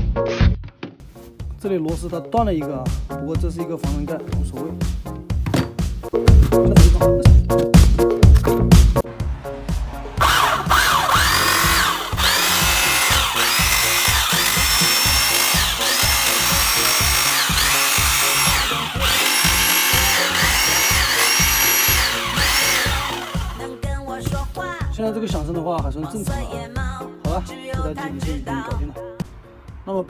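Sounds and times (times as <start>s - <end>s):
electric demolition hammer motor whining: 10.2s - 23.7s.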